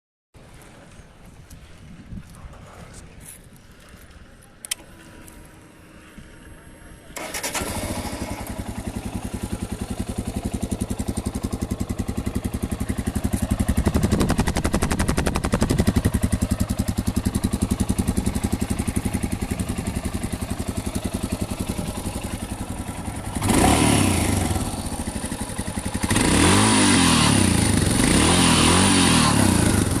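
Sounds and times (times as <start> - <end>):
motorcycle engine idling and revving: 6.2 - 30.0.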